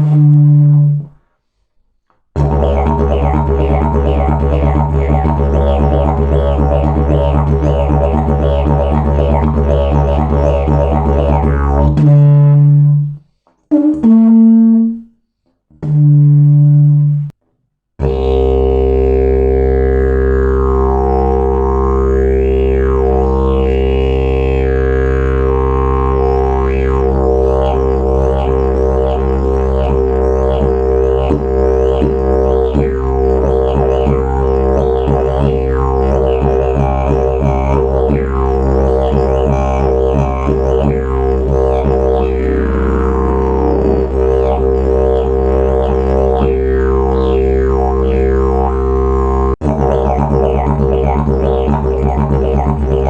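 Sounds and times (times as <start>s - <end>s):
didgeridoo drone: 2.4s - 12.2s, 18.0s - 53.0s.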